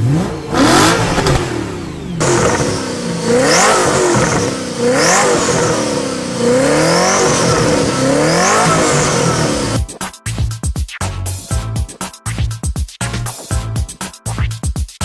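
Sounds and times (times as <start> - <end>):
car engine revving hard: 0.0 - 9.8
music: 9.7 - 15.0.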